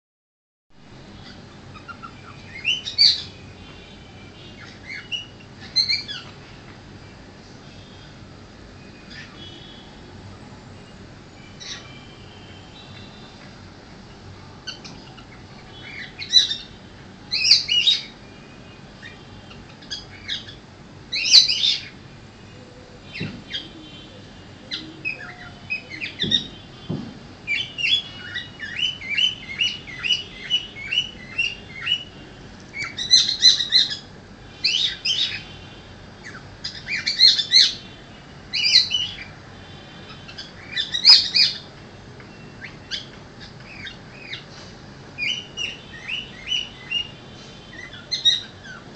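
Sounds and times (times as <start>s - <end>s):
cockatiel chirping and whistling: 40.3s - 41.6s.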